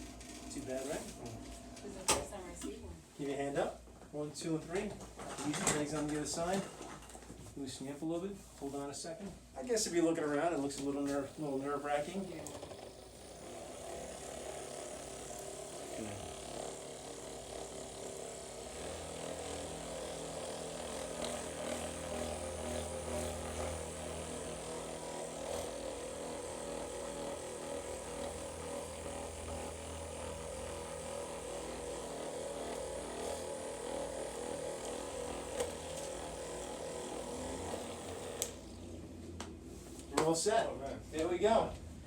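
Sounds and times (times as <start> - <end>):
electric massager motor humming: 0.0 - 3.0, 10.8 - 40.1.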